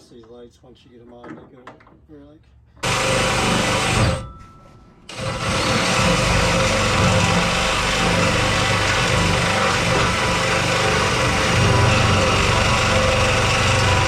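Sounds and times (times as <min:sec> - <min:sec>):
motor running steadily: 0:02.8 - 0:04.2, 0:05.1 - 0:14.0.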